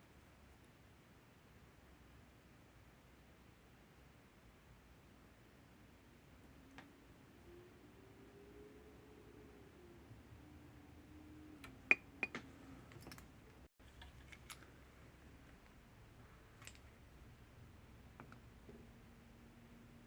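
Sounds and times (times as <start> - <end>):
hand tools clicking and tapping: 11.6 - 13.2.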